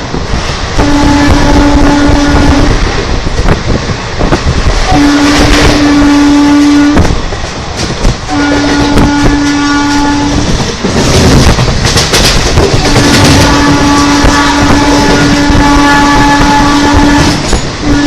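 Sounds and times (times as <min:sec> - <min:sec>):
train wheels rumbling and clattering: 0:00.0 - 0:18.0
locomotive horn blasts: 0:00.8 - 0:02.9, 0:04.8 - 0:07.2, 0:08.3 - 0:10.6, 0:12.8 - 0:18.0.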